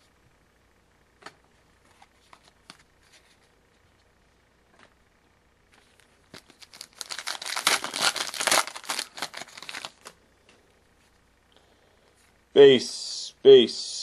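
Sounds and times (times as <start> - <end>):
card pack wrapper tearing and crinkling: 6.3 - 10.2.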